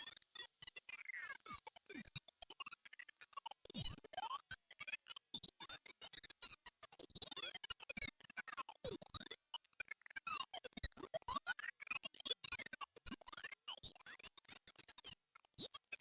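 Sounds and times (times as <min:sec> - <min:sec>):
rising high-pitched electronic tone: 0:00.0 - 0:16.0.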